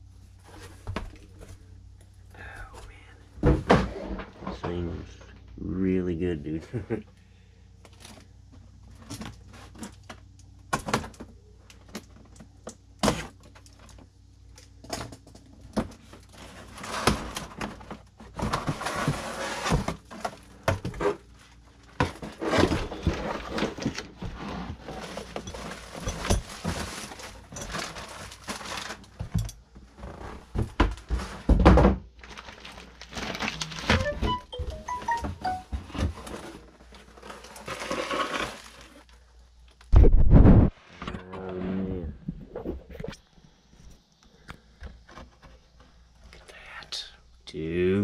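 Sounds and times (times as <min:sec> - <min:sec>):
cardboard and plastic rustling: 0:00.0 - 0:01.8, 0:07.8 - 0:41.0
packaging knocks and thunks: 0:22.0 - 0:37.9.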